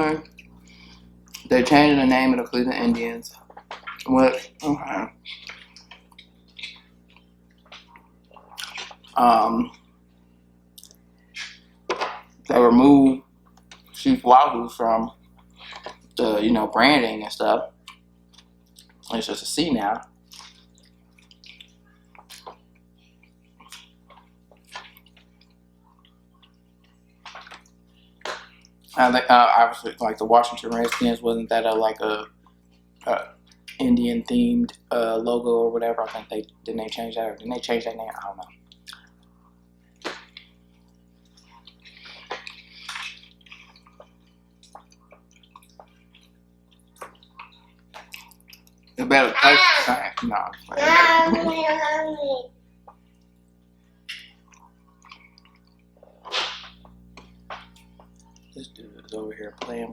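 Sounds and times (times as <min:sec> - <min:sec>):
person chewing: 0:00.2 - 0:01.5, 0:05.2 - 0:10.0, 0:10.7 - 0:12.4, 0:17.8 - 0:19.1, 0:20.2 - 0:29.0, 0:38.4 - 0:49.0, 0:54.0 - 0:59.2.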